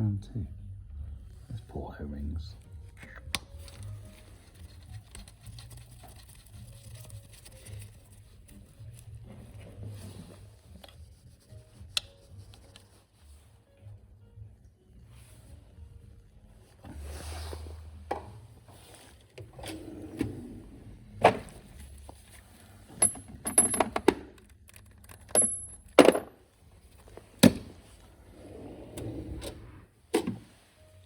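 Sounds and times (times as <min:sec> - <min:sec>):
metal tools clinking and knocking: 0:22.9 - 0:26.4.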